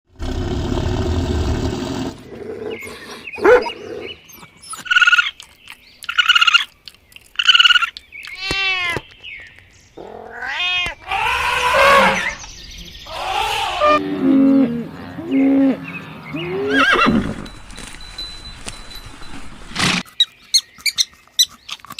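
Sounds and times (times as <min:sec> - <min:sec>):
cat meowing: 0:08.4 - 0:09.0, 0:10.0 - 0:12.2
low rough animal call: 0:13.0 - 0:17.5.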